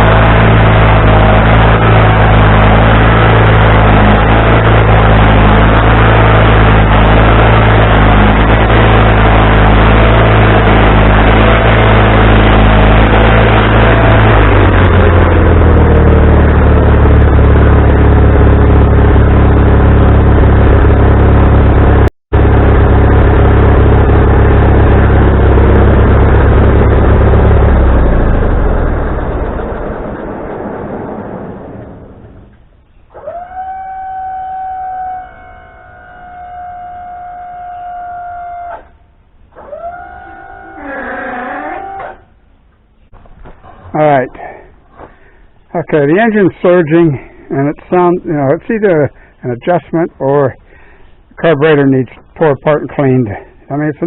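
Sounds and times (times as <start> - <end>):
sawmill gasoline engine running: 0.0 - 54.0
person talking: 43.9 - 44.6, 45.7 - 50.6, 51.4 - 54.0.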